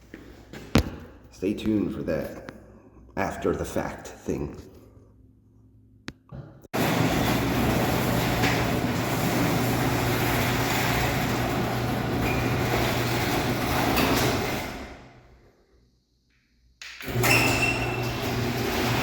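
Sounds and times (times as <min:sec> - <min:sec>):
door rollers rumbling on tracks: 0:06.7 - 0:15.3, 0:17.0 - 0:19.0
garage door opener motor hum: 0:06.7 - 0:15.4, 0:17.0 - 0:19.0.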